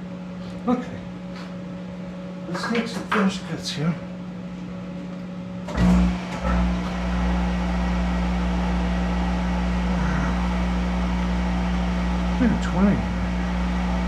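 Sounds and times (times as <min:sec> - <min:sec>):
lathe motor humming: 0:05.7 - 0:14.0.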